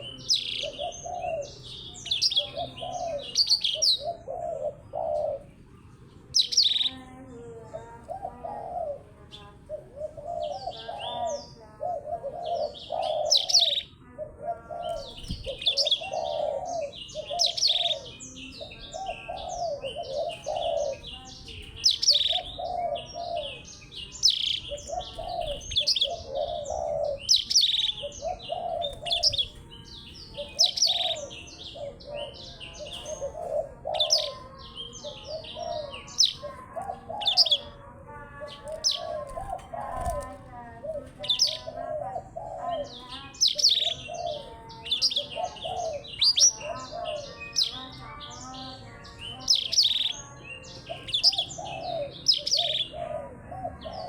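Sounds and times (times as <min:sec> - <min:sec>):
songbirds twittering: 0:00.0 - 0:54.0.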